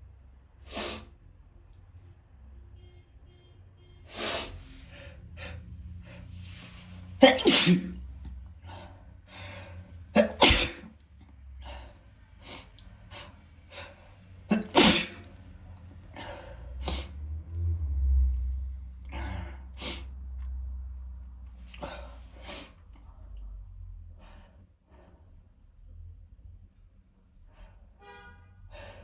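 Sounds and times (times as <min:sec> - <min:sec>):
man sneezing: 0:00.7 - 0:01.1, 0:06.4 - 0:08.1, 0:10.2 - 0:10.9, 0:14.5 - 0:15.3
breathy sounds: 0:04.1 - 0:10.9.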